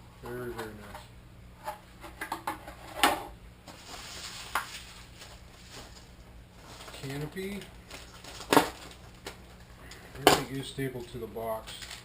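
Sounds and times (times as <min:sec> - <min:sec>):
faint steady hum: 0:00.0 - 0:12.0
parts and packaging clattering: 0:02.1 - 0:10.6, 0:11.6 - 0:12.0.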